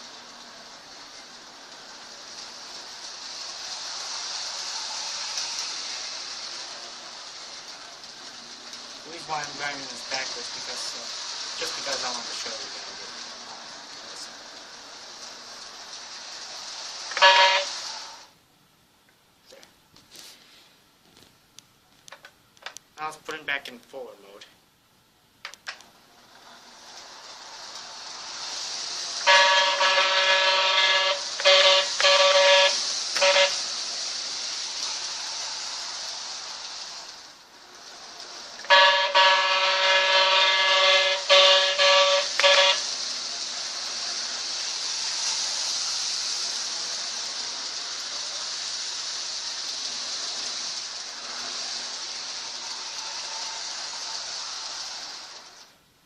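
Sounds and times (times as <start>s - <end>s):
toy train running with hiss: 0.0s - 18.4s, 19.4s - 21.3s, 22.0s - 24.5s, 25.5s - 56.0s
toy train horn blasts: 17.1s - 18.2s, 29.2s - 33.8s, 38.7s - 42.9s.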